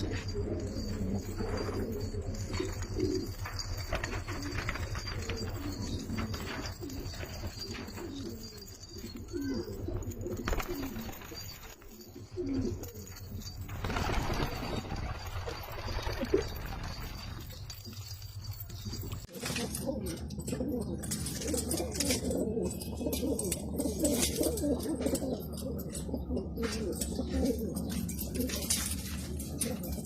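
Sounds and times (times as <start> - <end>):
pigeons cooing: 0.0 - 30.0.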